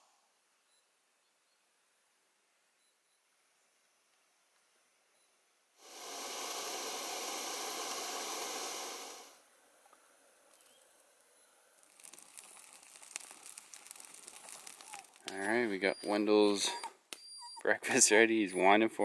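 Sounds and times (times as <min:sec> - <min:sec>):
loud steady hiss: 0:05.8 - 0:15.4
crackly rustling and crinkling: 0:09.8 - 0:16.7.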